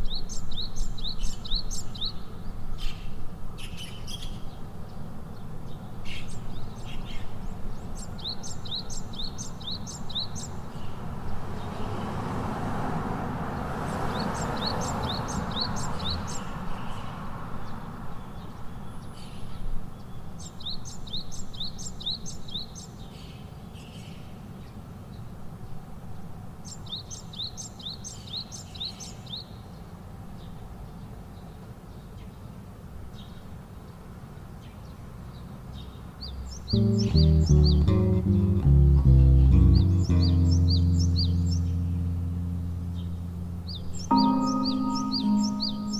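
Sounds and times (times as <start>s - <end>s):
songbird singing high chirps: 0.0s - 2.6s, 6.2s - 10.7s, 14.1s - 16.5s, 36.2s - 45.9s
low background rumble: 36.8s - 44.1s.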